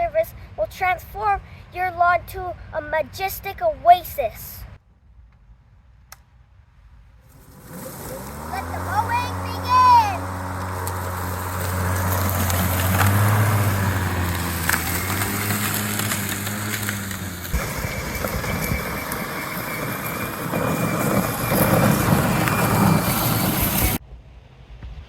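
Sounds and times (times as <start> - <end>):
lawn mower engine running: 7.3 - 24.0.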